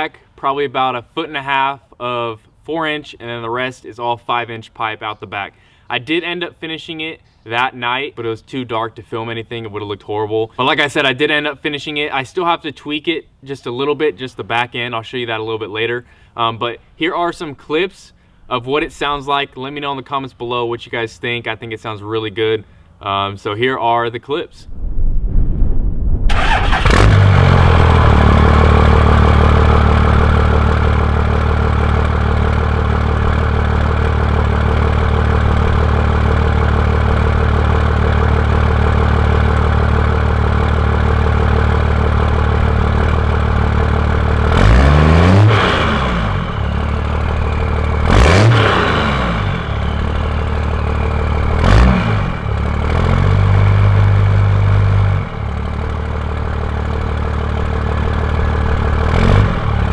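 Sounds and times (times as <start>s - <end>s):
diesel truck engine idling and revving: 26.3s - 59.9s.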